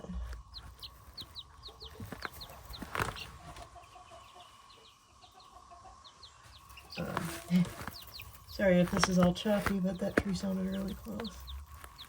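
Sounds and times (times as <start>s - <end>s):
chicks peeping: 0.0s - 12.0s.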